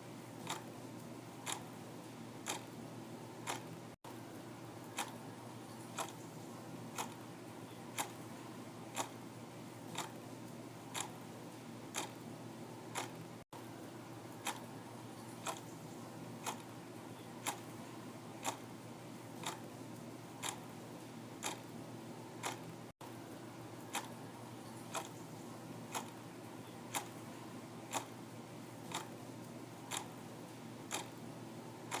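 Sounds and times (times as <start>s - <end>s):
faint constant hum: 0.0s - 32.0s
clock ticking: 0.4s - 0.7s, 1.4s - 1.7s, 2.4s - 2.7s, 3.4s - 3.7s, 4.9s - 5.2s, 6.0s - 6.2s, 7.0s - 7.2s, 8.0s - 8.2s, 8.9s - 9.2s, 10.0s - 10.2s, 10.9s - 11.2s, 12.0s - 12.2s, 12.9s - 13.2s, 14.4s - 14.6s, 15.4s - 15.6s, 16.4s - 16.7s, 18.4s - 18.6s, 19.4s - 19.6s, 20.4s - 20.6s, 21.4s - 21.6s, 22.4s - 22.7s, 23.9s - 24.1s, 24.9s - 25.2s, 25.9s - 26.2s, 26.9s - 27.2s, 27.9s - 28.2s, 28.9s - 29.1s, 29.9s - 30.1s, 30.9s - 31.2s.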